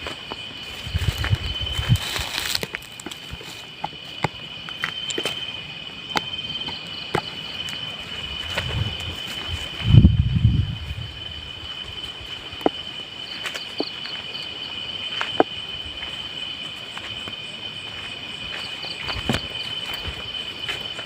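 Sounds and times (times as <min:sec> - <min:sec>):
night insects trilling: 0:00.0 - 0:21.0
pulsing insect call: 0:00.0 - 0:21.0
soft footstep thumps: 0:17.9 - 0:20.9.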